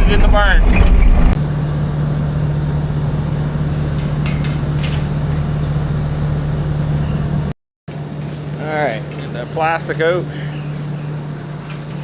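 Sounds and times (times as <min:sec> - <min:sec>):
tractor engine running: 0:00.0 - 0:07.5.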